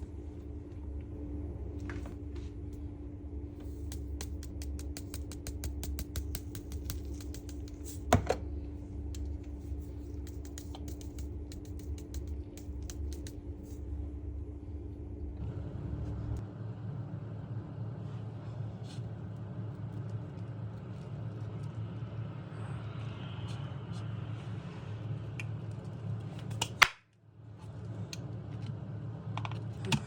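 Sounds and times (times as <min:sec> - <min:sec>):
low hum: 0:00.0 - 0:26.5.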